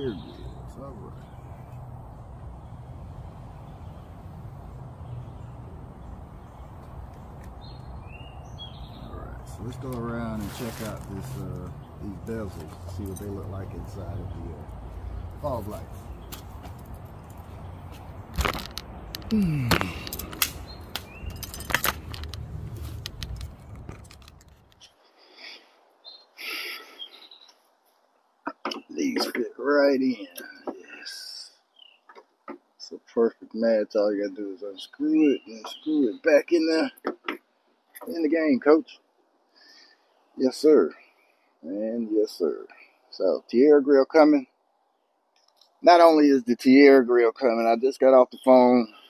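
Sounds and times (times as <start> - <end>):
bird chirps: 0.0 - 22.1, 24.8 - 27.7, 28.5 - 32.3, 34.2 - 37.0
faint rustles: 9.1 - 25.7
sharp clicks and scrapes: 18.3 - 24.9.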